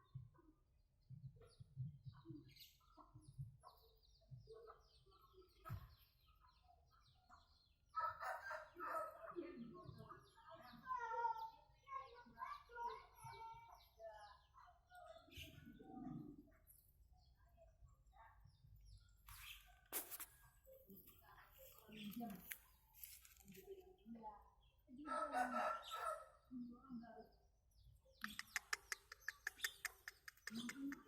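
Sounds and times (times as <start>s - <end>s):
domestic birds clucking: 7.3s - 9.7s, 25.0s - 26.5s, 27.8s - 31.0s.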